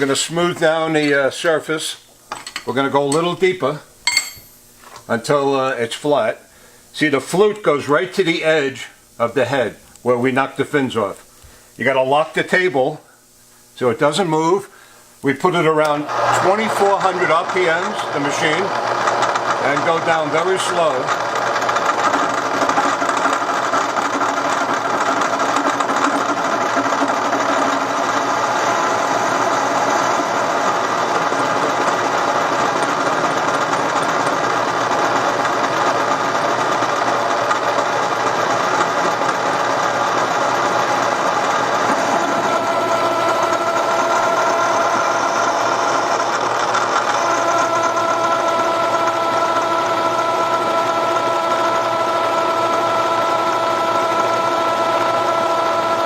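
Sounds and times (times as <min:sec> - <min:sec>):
milling machine cutting metal: 0:15.8 - 0:56.0.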